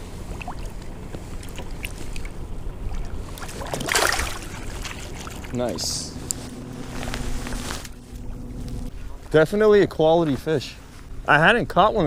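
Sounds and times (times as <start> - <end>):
water splash: 0.2 - 5.6.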